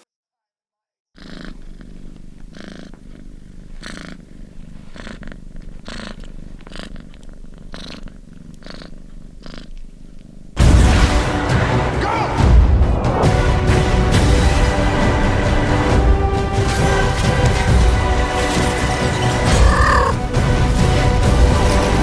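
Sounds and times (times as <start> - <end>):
cat purring: 1.2 - 10.6, 16.7 - 22.0
loud film music: 10.6 - 22.0.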